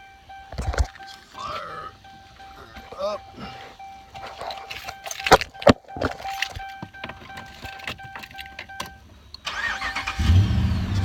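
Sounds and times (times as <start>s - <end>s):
dashboard warning chime dinging: 0.0s - 10.0s
keys jangling: 4.1s - 9.0s.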